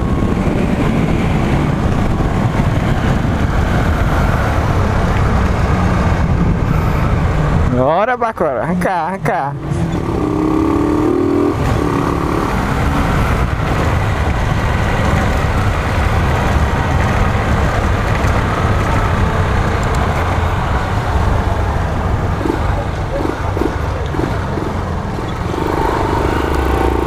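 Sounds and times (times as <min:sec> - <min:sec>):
wind rushing over microphone: 0:00.0 - 0:08.1, 0:09.6 - 0:27.0
motorcycle engine running: 0:22.1 - 0:27.0.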